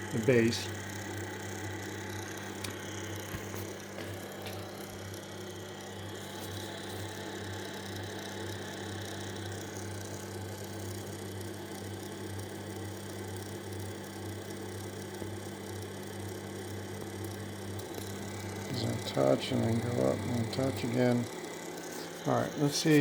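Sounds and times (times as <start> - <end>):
printer motors whirring: 0.0 - 23.0.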